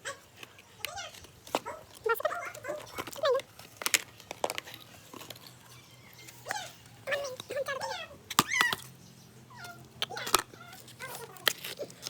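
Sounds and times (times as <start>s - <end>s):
animal whining: 5.3s - 12.0s.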